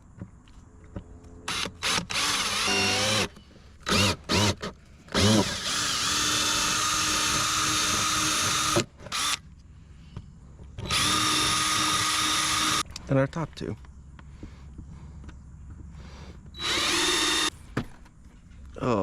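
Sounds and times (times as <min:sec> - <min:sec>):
power drill drilling: 0:01.5 - 0:09.4, 0:10.8 - 0:12.8, 0:16.5 - 0:17.5.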